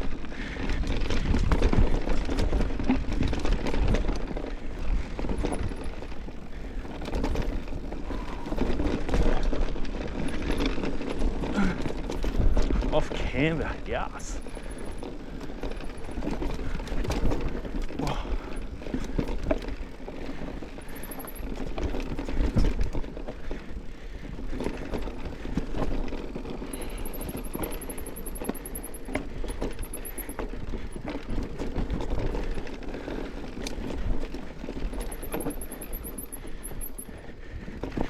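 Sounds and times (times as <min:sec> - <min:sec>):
bike rattling and knocking: 0:00.0 - 0:38.0
bike tyres on dirt and rocks: 0:00.0 - 0:38.0.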